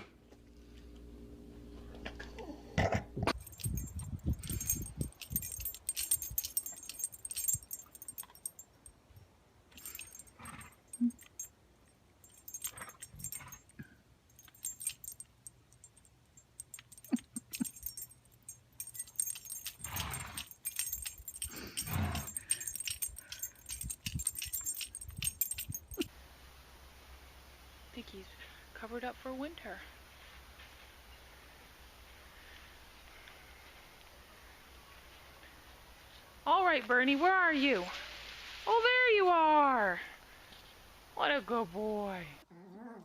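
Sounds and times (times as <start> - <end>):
small metal pieces jingling: 3.3 - 11.5, 12.2 - 26.1.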